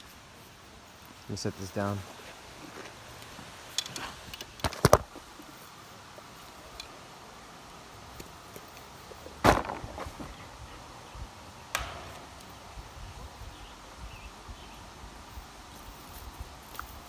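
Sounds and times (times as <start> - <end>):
sharp knocks: 11.7 - 12.7.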